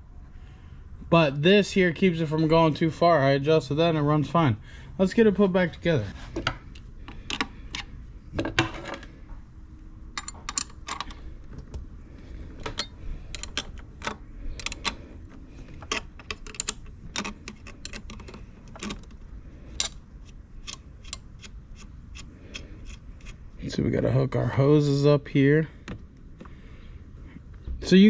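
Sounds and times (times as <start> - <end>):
metal parts and tools clicking: 10.1 - 11.3, 12.5 - 23.4.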